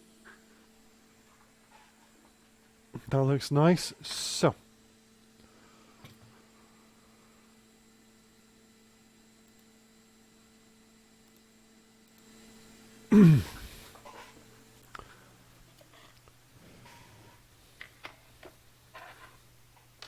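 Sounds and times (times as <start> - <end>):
low electrical hum: 0.0 - 20.0
person's loud vocal burst: 13.1 - 13.8.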